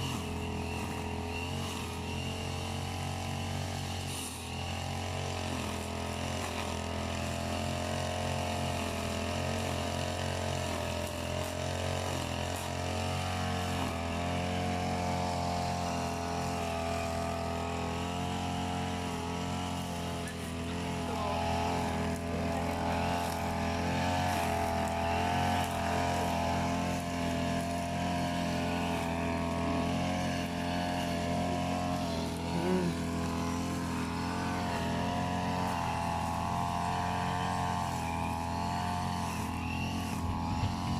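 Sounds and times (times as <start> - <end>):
brush cutter engine running: 0.0 - 40.9.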